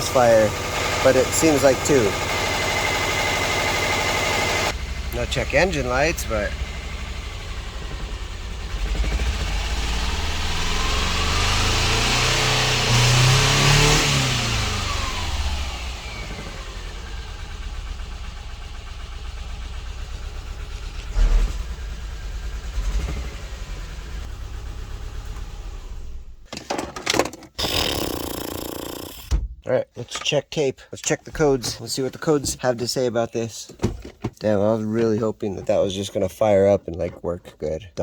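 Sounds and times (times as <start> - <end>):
misfiring car engine revving: 0.0 - 26.4, 27.6 - 29.4
sharp thump: 29.2 - 29.6.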